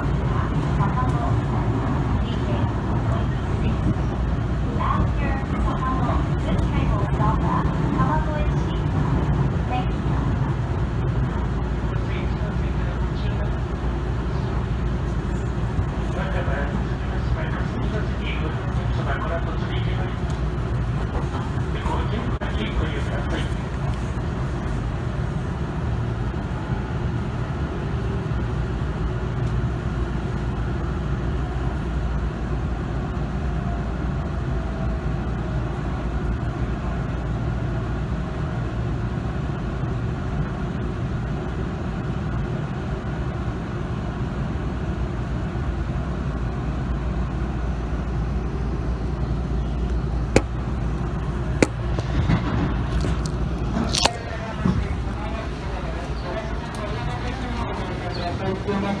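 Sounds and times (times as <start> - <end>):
train car rumble: 0.0 - 59.0.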